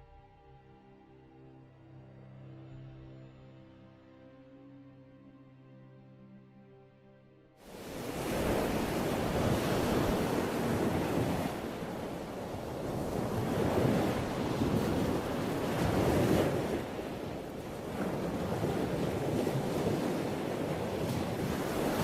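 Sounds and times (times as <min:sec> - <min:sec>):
wind: 0:07.6 - 0:22.0
surf: 0:07.7 - 0:22.0.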